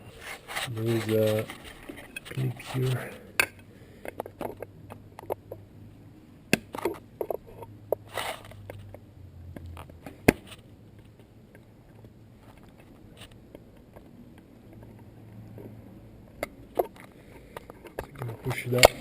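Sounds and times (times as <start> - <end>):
scraping rustle: 0.0 - 3.2.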